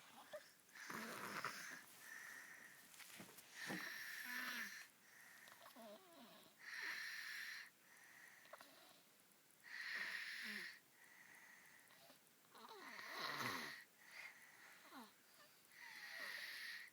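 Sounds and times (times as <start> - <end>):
toddler snoring: 0.0 - 2.5, 3.6 - 7.7, 9.7 - 10.8, 11.9 - 15.2, 15.8 - 16.9.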